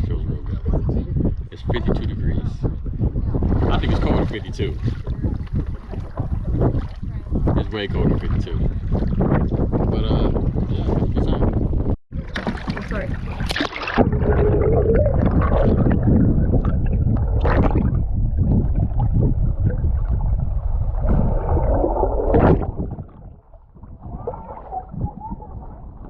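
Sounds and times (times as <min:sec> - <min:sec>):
water splashing and sloshing: 0:00.0 - 0:26.0
water lapping: 0:03.4 - 0:11.4, 0:12.2 - 0:26.0
heavy low rumble: 0:14.0 - 0:26.0.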